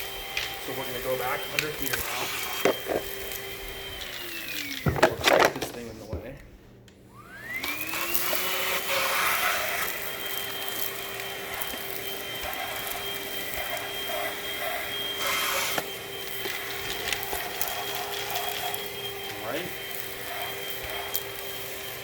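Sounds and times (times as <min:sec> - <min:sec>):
vacuum motor whine: 0:00.0 - 0:22.0.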